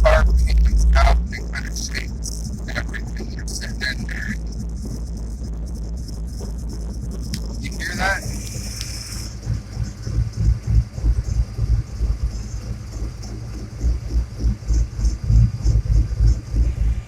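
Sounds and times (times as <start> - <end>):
car engine idling unevenly: 7.3 - 17.0.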